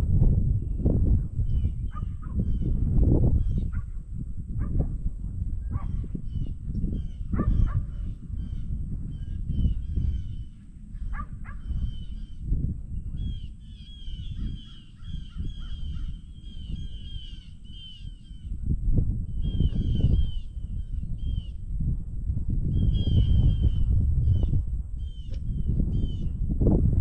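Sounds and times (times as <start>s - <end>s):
steady low rumble: 0.0s - 27.0s
birds chirping: 5.7s - 18.6s.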